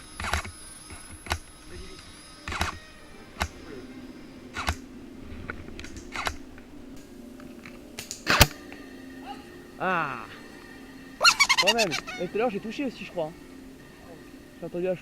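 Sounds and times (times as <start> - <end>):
airsoft gunfire pops: 2.5 - 2.8, 4.5 - 4.8, 8.0 - 8.8.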